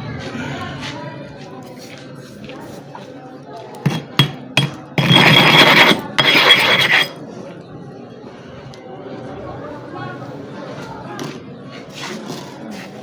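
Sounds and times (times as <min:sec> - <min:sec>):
sharpening stone rasping: 0:03.8 - 0:07.2.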